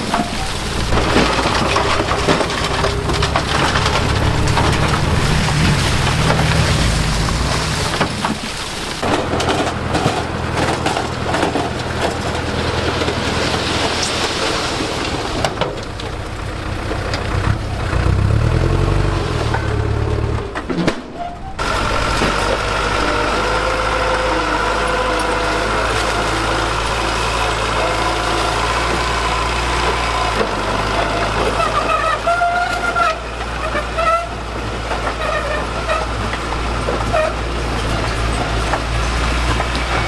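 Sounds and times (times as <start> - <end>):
diesel engine revving under load: 0.0 - 40.0
soil and stones crunching: 0.0 - 40.0.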